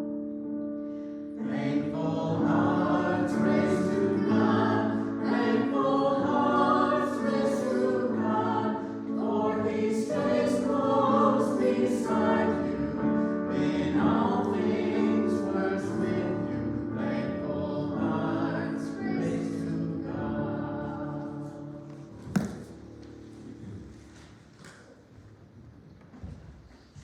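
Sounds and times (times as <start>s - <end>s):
congregation singing a hymn: 1.3s - 24.4s.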